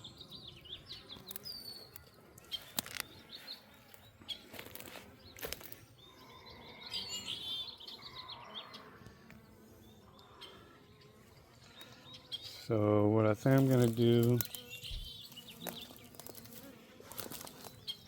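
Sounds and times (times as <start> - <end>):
birds chirping and warbling: 0.0 - 18.0
sharp clicks and rustles: 1.3 - 3.1.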